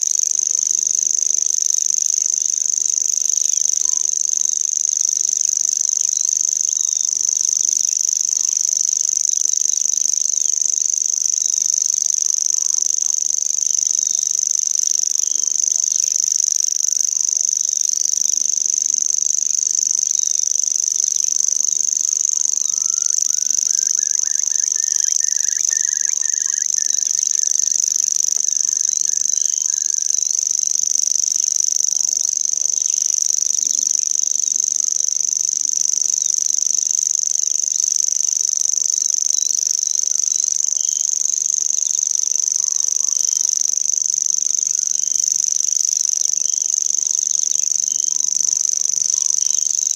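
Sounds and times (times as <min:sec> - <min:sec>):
insects trilling: 0:16.9 - 0:34.4, 0:39.0 - 0:49.9
bird repeating notes: 0:22.5 - 0:30.3.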